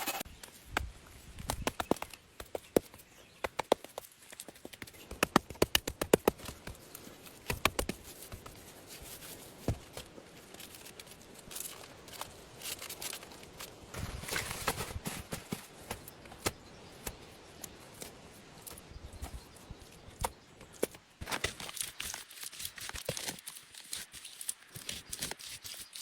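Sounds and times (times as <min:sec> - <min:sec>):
scraping and rustling: 0:06.5 - 0:16.1.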